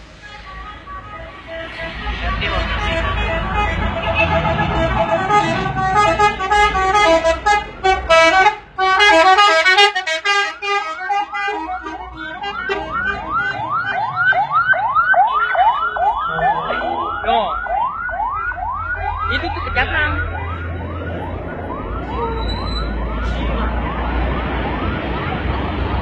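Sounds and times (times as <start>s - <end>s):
engine and traffic rumble: 0.0s - 26.0s
musical air horn whooping: 0.1s - 14.5s, 15.1s - 17.1s.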